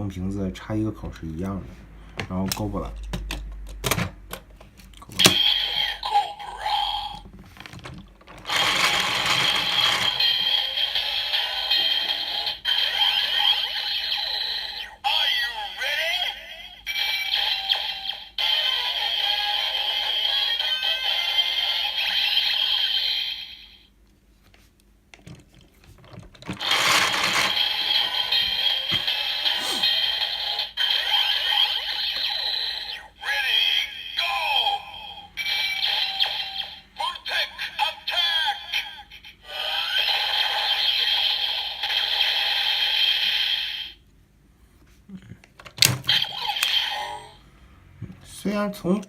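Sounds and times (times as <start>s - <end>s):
plastic handling noises: 7.2s - 10.2s
plastic toy clicks: 8.3s - 10.4s, 26.4s - 27.8s
toy electronic sound effect: 8.4s - 11.4s, 26.6s - 30.2s, 35.4s - 36.8s.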